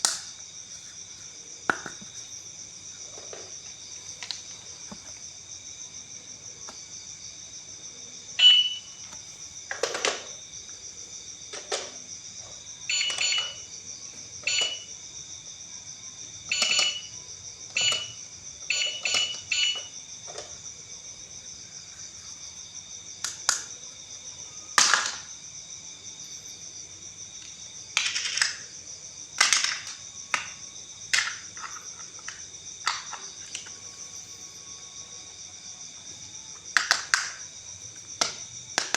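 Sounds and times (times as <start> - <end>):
short beeps: 8.4 - 9.0.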